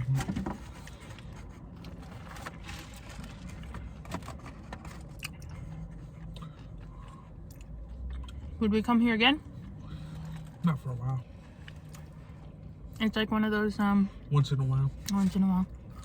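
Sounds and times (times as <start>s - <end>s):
food and packaging rustling: 0.0s - 7.2s
low steady hum: 0.0s - 16.0s
faint chewing: 0.8s - 8.6s.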